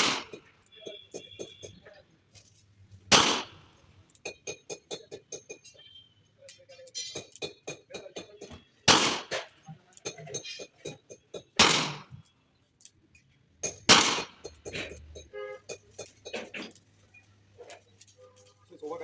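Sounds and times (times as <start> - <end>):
revolver shots: 3.1 - 3.6.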